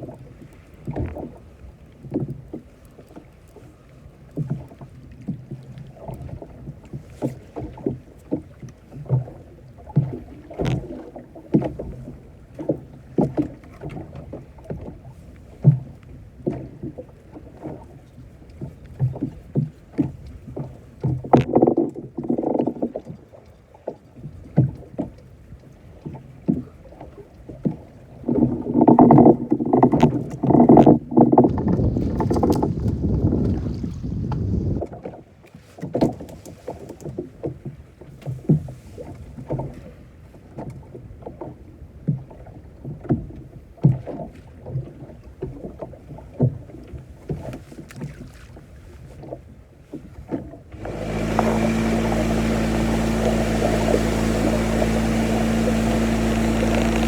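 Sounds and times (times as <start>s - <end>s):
knocks and clatter on boat: 0.0s - 57.0s
boat engine running: 16.3s - 34.9s, 50.6s - 57.0s.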